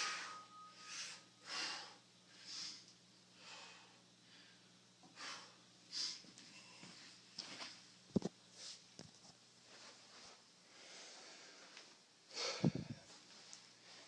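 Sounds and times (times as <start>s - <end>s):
man breathing hard: 0.0s - 7.0s, 10.7s - 13.2s.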